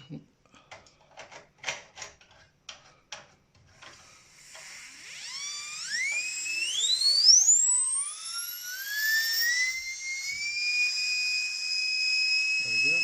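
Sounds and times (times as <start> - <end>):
dental drill high whine: 3.9 - 13.0.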